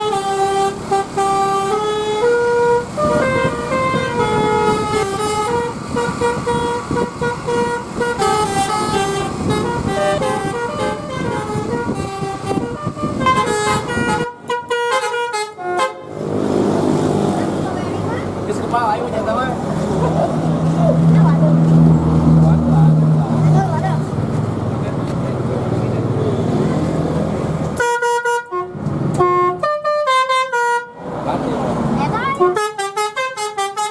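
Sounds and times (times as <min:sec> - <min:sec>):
multi-tone bus air horn melody: 0:00.0 - 0:16.4, 0:27.8 - 0:31.1, 0:32.2 - 0:33.9
engine and road noise: 0:00.0 - 0:33.9.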